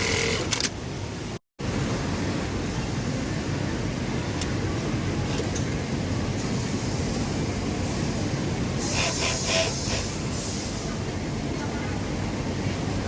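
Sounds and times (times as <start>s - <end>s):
sewing machines running: 0.0s - 0.5s
short hissing burst: 8.8s - 10.9s.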